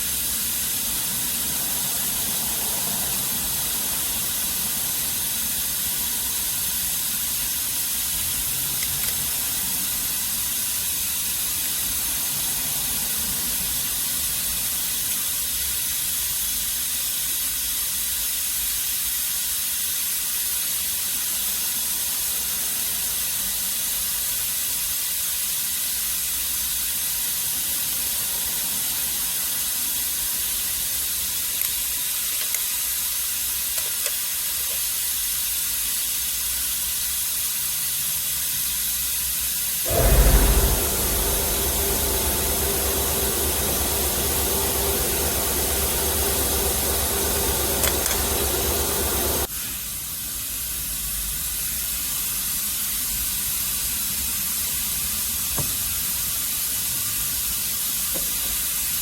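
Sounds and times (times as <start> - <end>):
steady hiss: 0.0 - 59.0
machine humming: 39.9 - 49.5.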